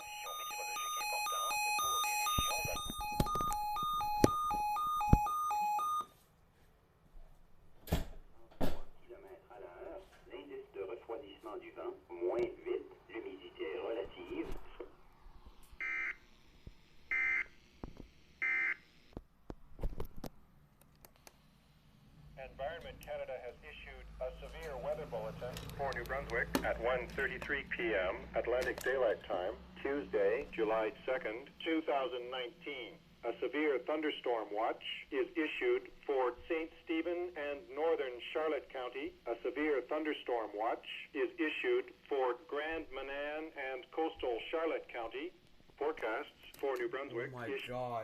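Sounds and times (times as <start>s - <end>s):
alternating electronic alert tones: 0.0s - 6.1s, 15.8s - 16.2s, 17.1s - 17.5s.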